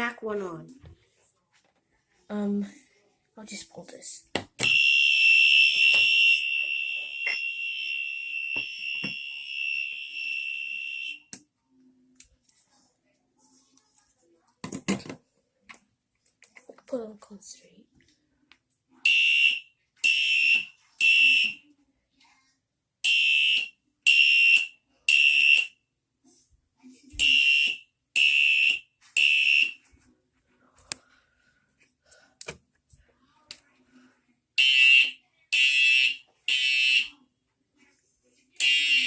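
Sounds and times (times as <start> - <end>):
fire alarm horn blasts: 4.7 - 11.3, 19.1 - 21.6, 23.0 - 25.7, 27.2 - 29.8, 34.6 - 37.1, 38.6 - 39.0.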